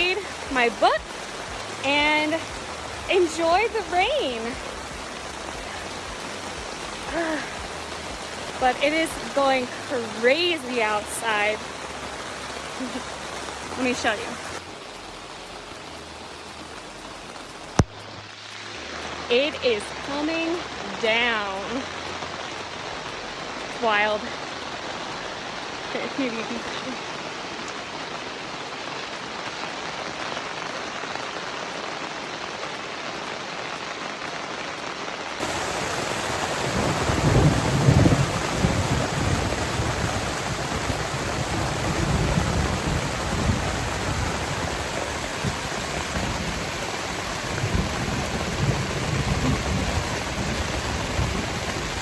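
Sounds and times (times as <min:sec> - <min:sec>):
heavy rain pouring: 0:00.0 - 0:52.0
low rumbling thunder: 0:35.4 - 0:52.0.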